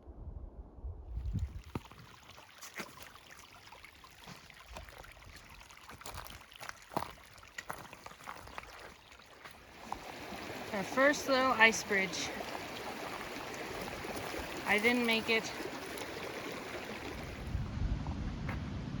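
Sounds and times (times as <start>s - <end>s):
low rumble: 0.0s - 1.6s, 17.4s - 19.0s
mountain stream running: 1.2s - 17.6s.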